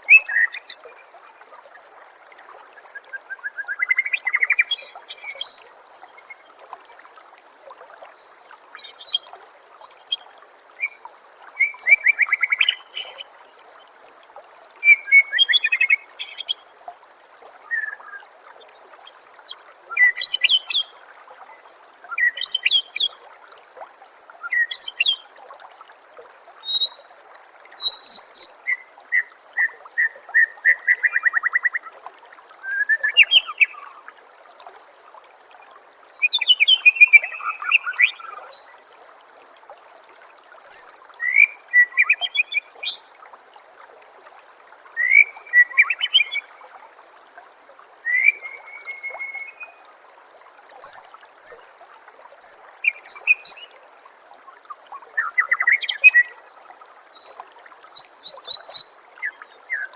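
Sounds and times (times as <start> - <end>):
songbird singing: 0.0 - 1.0, 2.8 - 7.2, 8.2 - 16.7, 17.7 - 20.9, 24.4 - 25.2, 36.2 - 38.8, 45.0 - 46.5, 48.1 - 49.8, 50.8 - 53.8
water trickling: 0.0 - 59.9.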